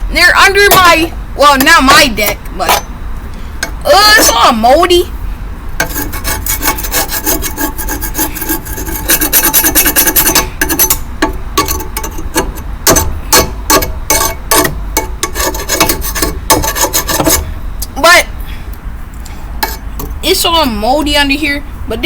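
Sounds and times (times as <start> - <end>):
scraping grass off metal deck: 5.8 - 11.0.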